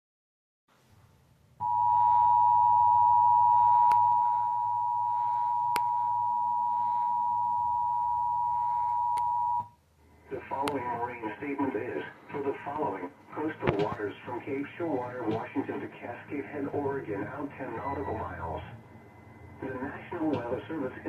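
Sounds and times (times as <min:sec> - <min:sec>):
low hum: 0:00.9 - 0:13.4
two-tone alert signal: 0:17.8 - 0:18.8.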